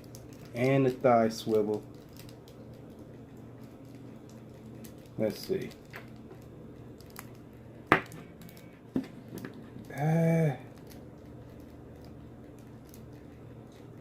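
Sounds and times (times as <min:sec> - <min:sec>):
man humming: 0:09.8 - 0:10.7.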